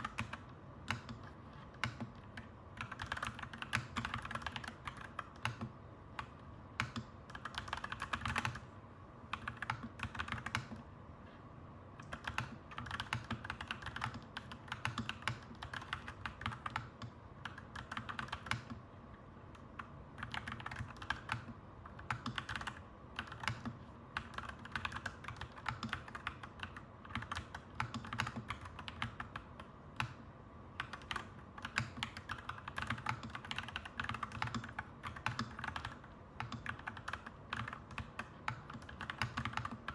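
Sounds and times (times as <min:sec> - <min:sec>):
mechanical keyboard typing: 0:00.0 - 0:08.7, 0:09.3 - 0:10.9, 0:12.0 - 0:18.8, 0:19.5 - 0:39.9
low background hum: 0:00.0 - 0:39.9.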